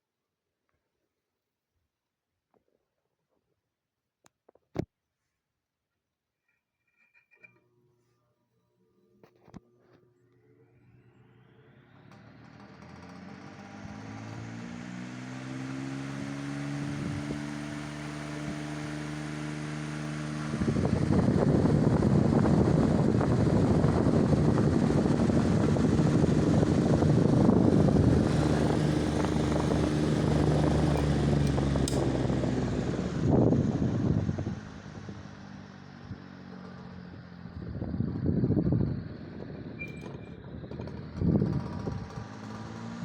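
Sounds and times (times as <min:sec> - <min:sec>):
electric fan motor hum: 0:10.4 - 0:43.0
rush of moving air: 0:20.3 - 0:35.1.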